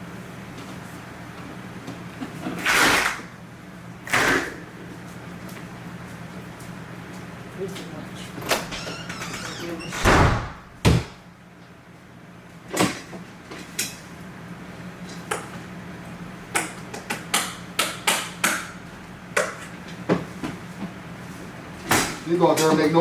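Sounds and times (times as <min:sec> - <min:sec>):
knocks and bangs: 0:10.0 - 0:11.3.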